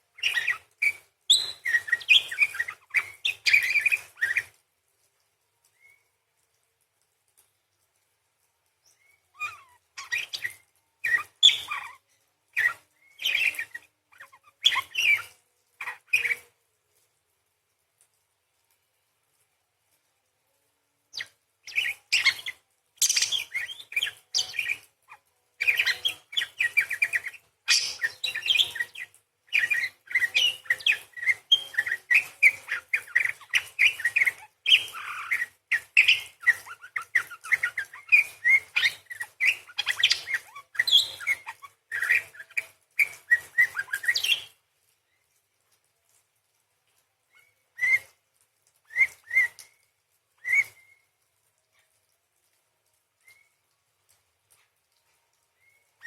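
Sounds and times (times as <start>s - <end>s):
parakeet chattering chirps and trills: 21.7s - 29.1s, 29.7s - 43.3s.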